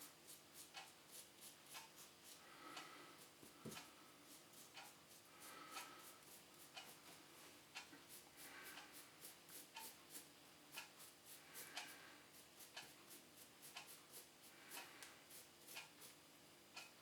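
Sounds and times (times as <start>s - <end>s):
brush scratching loose granules: 0.2s - 2.4s, 8.0s - 16.2s.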